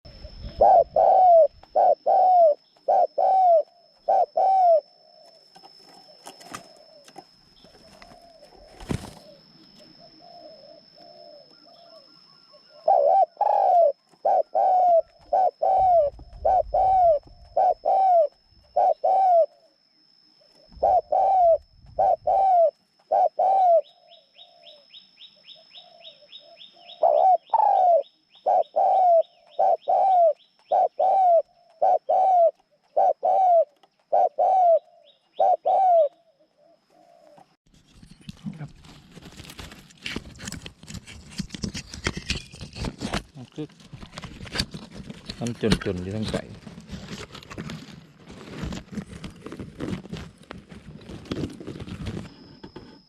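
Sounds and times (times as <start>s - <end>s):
decoy bird calling: 0.1s - 5.4s, 6.0s - 19.8s, 20.4s - 37.6s
steady high whine: 0.1s - 32.6s.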